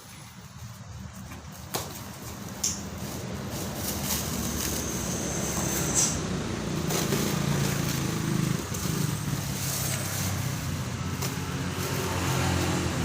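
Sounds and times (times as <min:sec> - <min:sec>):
engine running at low speed: 0:03.0 - 0:13.0.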